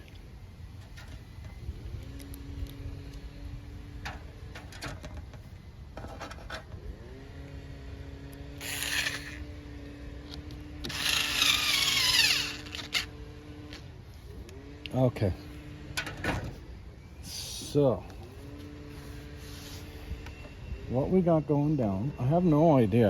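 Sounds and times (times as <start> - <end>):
power tool motor running: 6.9 - 16.2.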